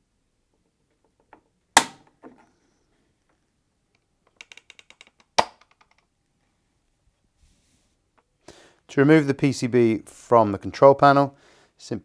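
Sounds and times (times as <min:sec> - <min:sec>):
small clicks: 0:03.9 - 0:06.1.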